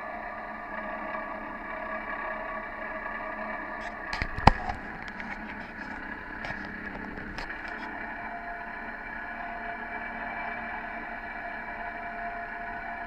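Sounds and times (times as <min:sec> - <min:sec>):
boat engine running: 0:00.8 - 0:09.2.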